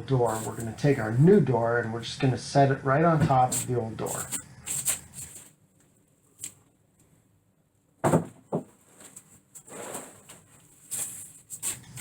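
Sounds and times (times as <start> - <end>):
wooden door thud: 8.0 - 8.7.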